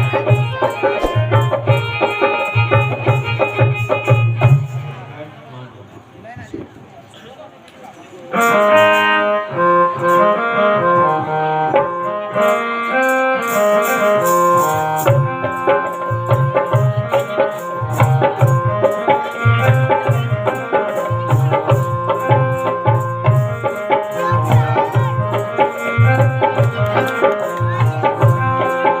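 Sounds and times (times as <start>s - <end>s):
melody instrument playing: 0.0s - 4.6s
hand drum beating: 0.0s - 4.7s, 14.5s - 29.0s
high ticking percussion: 0.0s - 5.0s, 11.8s - 29.0s.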